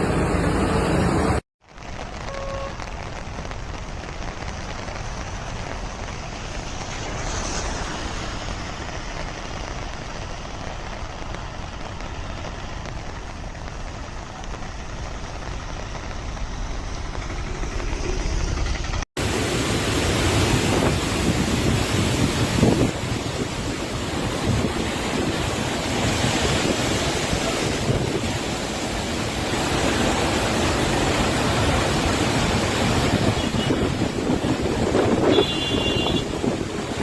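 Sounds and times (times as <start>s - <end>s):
rushing water: 0.0s - 37.0s
wind buffeting microphone: 20.3s - 29.0s, 31.5s - 37.0s.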